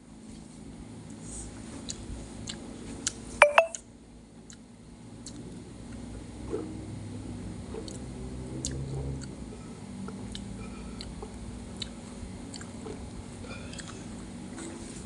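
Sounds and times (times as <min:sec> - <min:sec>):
chewing crunchy food: 0:01.8 - 0:03.2, 0:04.4 - 0:06.1, 0:07.7 - 0:09.4, 0:10.0 - 0:14.9.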